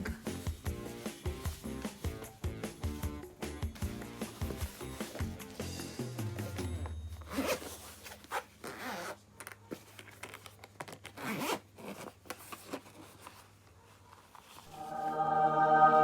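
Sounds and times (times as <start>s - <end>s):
quiet background music: 0.0s - 9.1s, 14.7s - 16.0s
zipper being pulled open: 7.3s - 13.3s.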